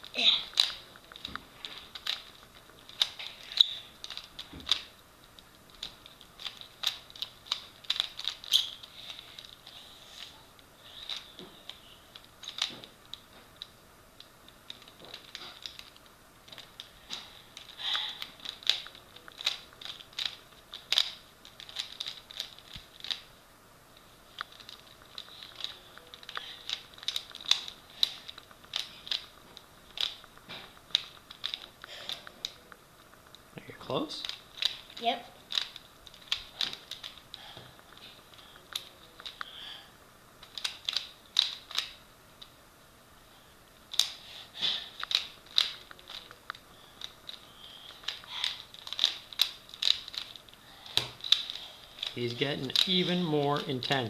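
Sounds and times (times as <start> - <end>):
puzzle cube plastic clicks: 0.0 - 23.3, 24.0 - 39.6, 40.4 - 42.5, 43.9 - 54.0.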